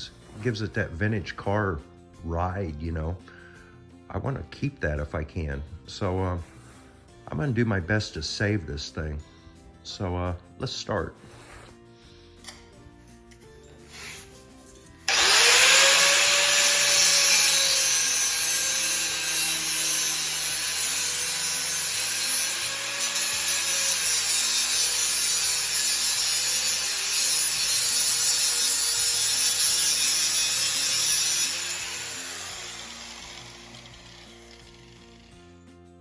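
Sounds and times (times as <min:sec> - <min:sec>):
electric grinder grinding steel: 0:15.0 - 0:35.8.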